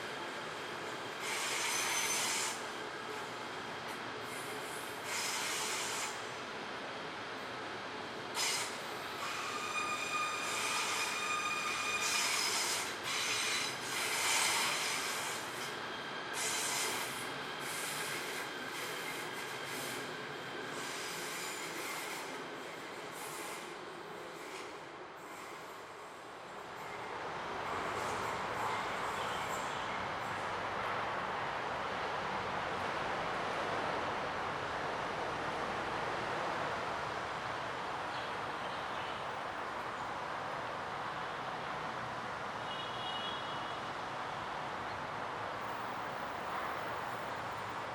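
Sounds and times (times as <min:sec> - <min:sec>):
train brakes squealing: 0:01.0 - 0:02.7, 0:04.2 - 0:06.3, 0:08.3 - 0:26.2, 0:27.8 - 0:30.4.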